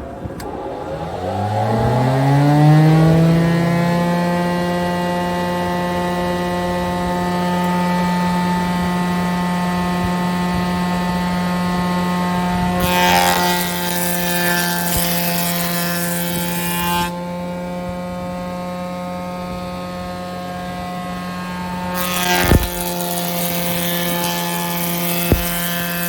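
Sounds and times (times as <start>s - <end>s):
jointer humming and whining: 0.0s - 26.0s
wood being planed: 0.4s - 26.0s
board thump: 25.3s - 25.7s.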